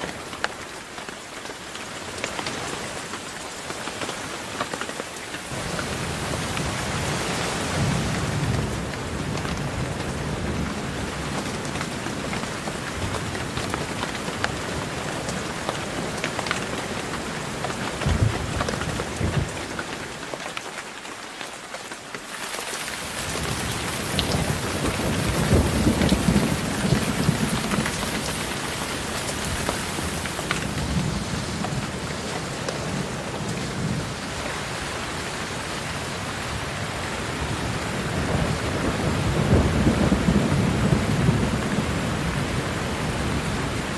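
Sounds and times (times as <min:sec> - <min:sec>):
heavy rain: 0:00.0 - 0:43.9
thunder rumbling: 0:22.9 - 0:43.9.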